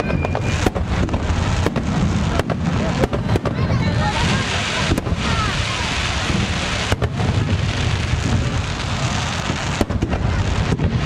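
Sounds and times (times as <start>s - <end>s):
faint firework whistle: 0.0s - 1.8s
fireworks crackling: 0.0s - 11.0s
sharp firework bangs: 0.0s - 11.0s.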